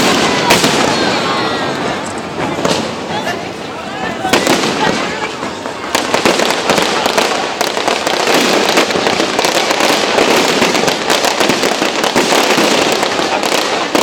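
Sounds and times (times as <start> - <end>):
fireworks crackling: 0.0 - 14.0.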